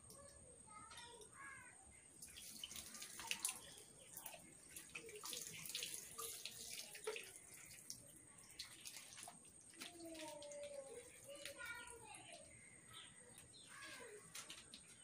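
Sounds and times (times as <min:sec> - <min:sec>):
water splashing and pouring: 0:02.2 - 0:11.9.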